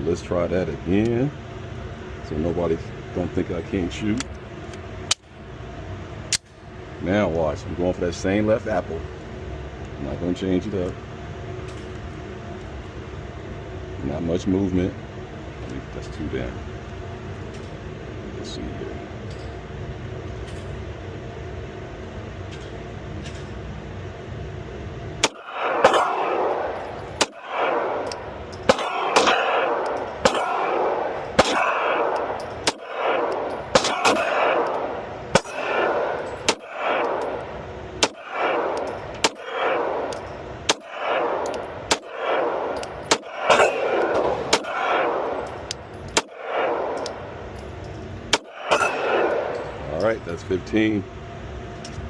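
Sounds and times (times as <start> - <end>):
ventilation hum: 0.0 - 52.0
pistol shots with ringing echo: 25.2 - 47.6, 48.3 - 49.8.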